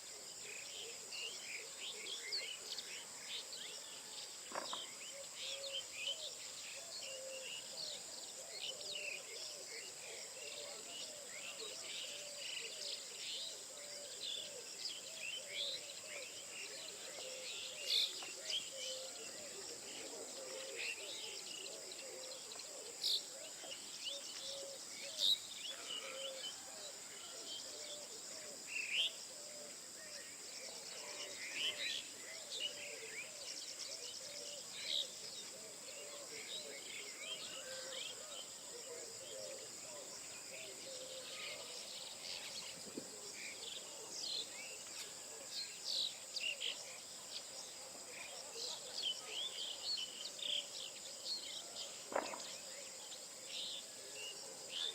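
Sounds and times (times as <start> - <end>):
insects droning: 0.0 - 54.9.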